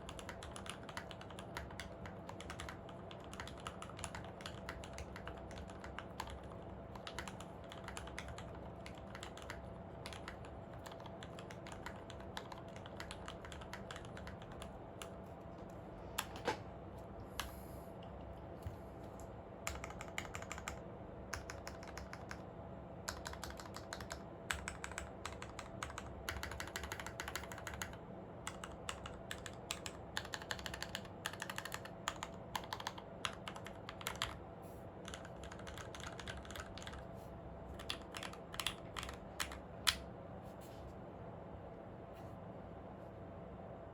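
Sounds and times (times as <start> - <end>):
typing on mechanical keyboard: 0.0 - 15.2, 19.6 - 22.4, 23.1 - 34.4, 35.0 - 37.0, 37.8 - 40.0.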